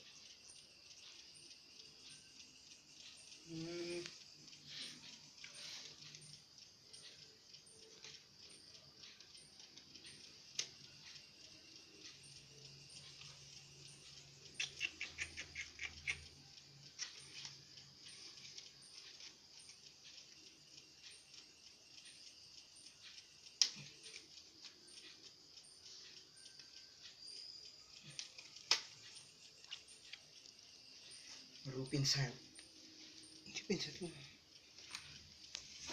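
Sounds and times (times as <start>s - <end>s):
faint steady hiss: 0.0s - 35.9s
small parts clicking and tapping: 0.0s - 35.9s.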